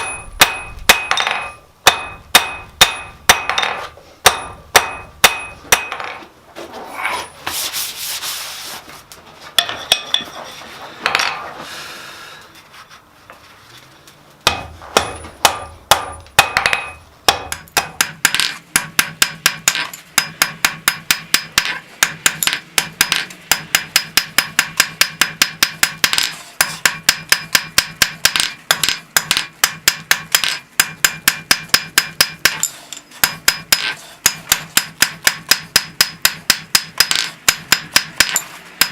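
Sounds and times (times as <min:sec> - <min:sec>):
hammer striking steel on anvil: 0:00.0 - 0:06.2, 0:09.6 - 0:10.4, 0:14.4 - 0:38.9
scraping and rubbing on metal: 0:06.6 - 0:11.6, 0:26.1 - 0:26.8, 0:32.5 - 0:34.3.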